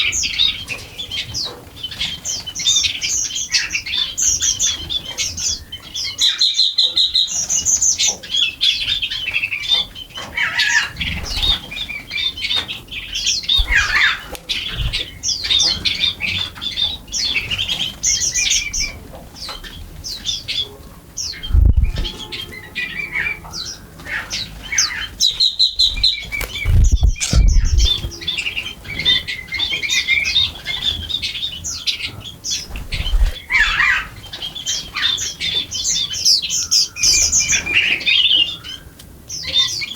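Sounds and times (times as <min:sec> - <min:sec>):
small birds chirping: 0:00.0 - 0:39.9
low thumps: 0:21.4 - 0:22.2, 0:25.7 - 0:28.2.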